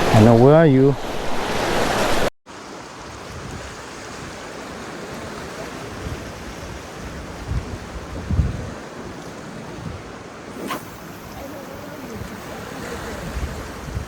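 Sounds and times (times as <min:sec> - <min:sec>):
ocean surf: 0:00.0 - 0:08.1, 0:08.9 - 0:14.0
wind on microphone: 0:05.2 - 0:14.0.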